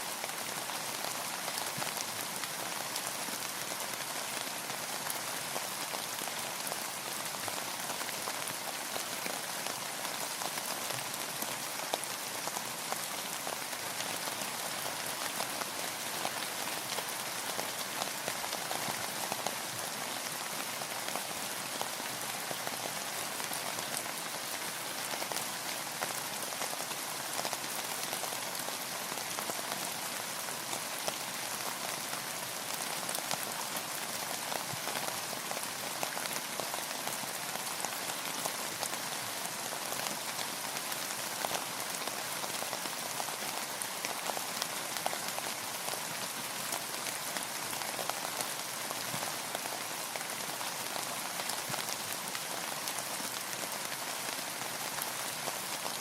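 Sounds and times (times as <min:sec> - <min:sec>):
steady rain pattering: 0:00.0 - 0:56.0.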